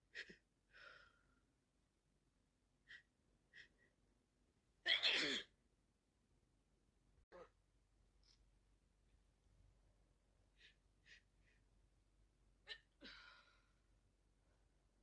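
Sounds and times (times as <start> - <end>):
woman sneezing loudly: 4.9 - 5.5.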